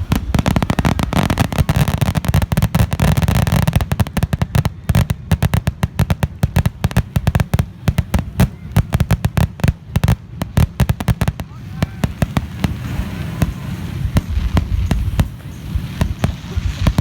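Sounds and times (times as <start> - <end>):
fireworks shell bursts: 12.4 - 17.0.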